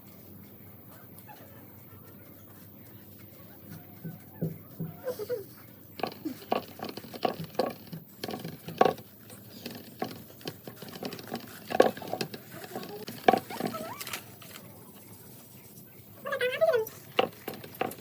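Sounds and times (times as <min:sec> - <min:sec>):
straw rustling and crackling: 0:06.0 - 0:15.6, 0:16.2 - 0:18.0.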